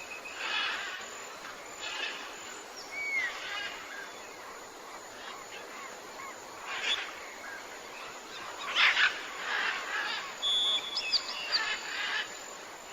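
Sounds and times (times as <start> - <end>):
wild birds chirping and whistling: 0.0 - 12.9.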